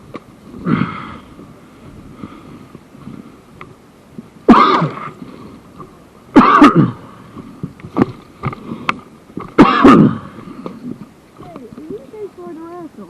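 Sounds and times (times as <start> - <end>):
person coughing: 4.5 - 4.9, 6.4 - 7.0, 9.6 - 10.2.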